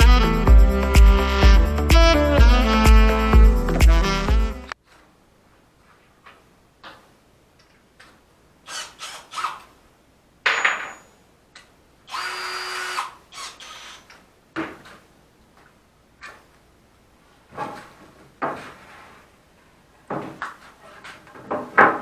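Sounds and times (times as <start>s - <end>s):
power drill running: 8.7s - 9.6s, 12.1s - 14.1s.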